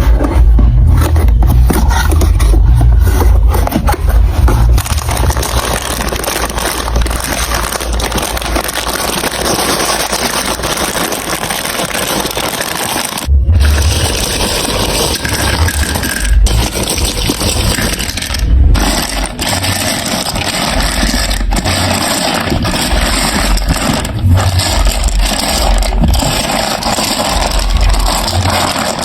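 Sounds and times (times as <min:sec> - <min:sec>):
low thuds: 0:00.0 - 0:08.4
marbles rattling on plastic tracks: 0:00.0 - 0:29.0.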